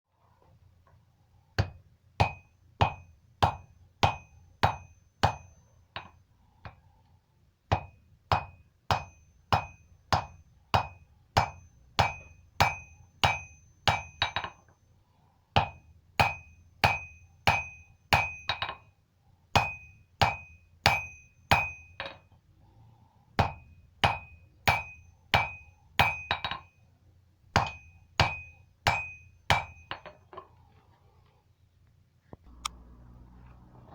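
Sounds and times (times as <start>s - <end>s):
hammer striking steel on anvil: 1.6s - 6.8s, 7.7s - 14.6s, 15.6s - 18.8s, 19.5s - 22.3s, 23.4s - 26.8s, 27.5s - 30.3s.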